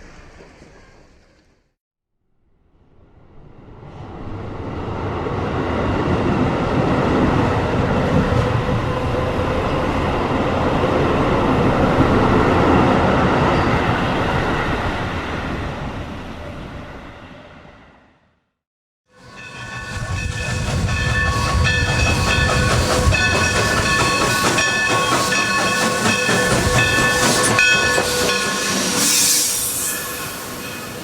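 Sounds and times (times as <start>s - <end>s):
train wheels rumbling on rails: 0.0s - 1.7s, 19.1s - 31.0s.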